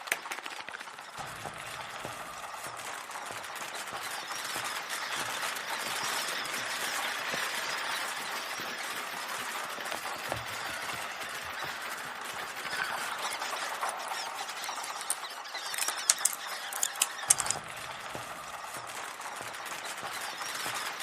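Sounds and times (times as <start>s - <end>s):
squirrels cracking nuts: 0.0s - 21.0s.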